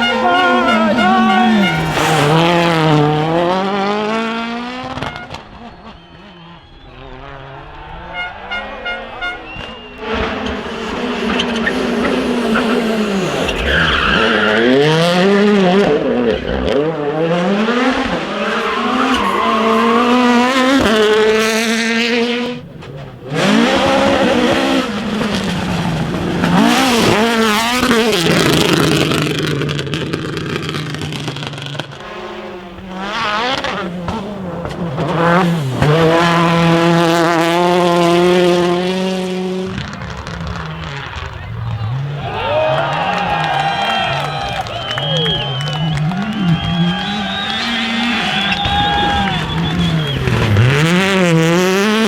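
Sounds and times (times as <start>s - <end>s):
car engine revving: 0.0s - 52.0s
tyres skidding: 0.0s - 52.0s.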